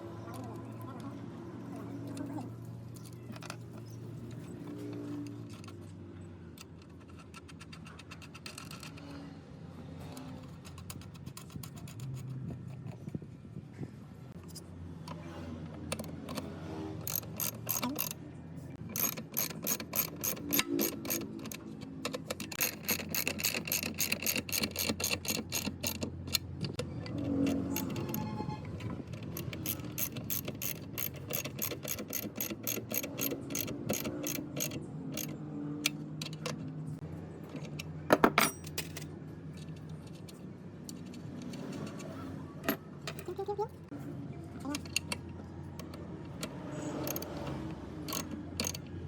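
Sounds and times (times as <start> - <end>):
ratcheting hand tool clicks: 15.8 - 18.2, 18.8 - 28.2, 29.0 - 36.7, 44.7 - 49.0.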